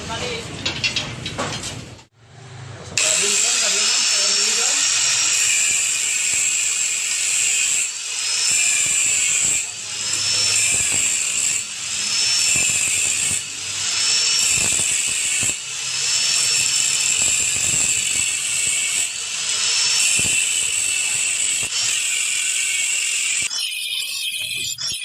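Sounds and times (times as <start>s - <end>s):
power tool grinding steel: 3.0s - 25.0s.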